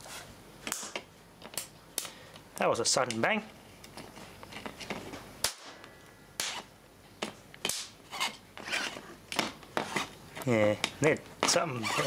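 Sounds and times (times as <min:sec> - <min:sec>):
capacitor discharge crack: 0:05.4 - 0:06.7, 0:07.6 - 0:08.0.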